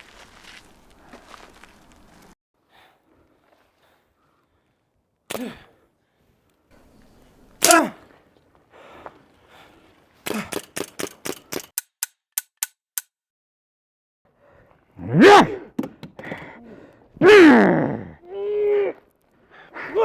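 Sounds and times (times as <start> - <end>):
sharp clicks: 10.3 - 13.1
man groaning: 17.2 - 19.0.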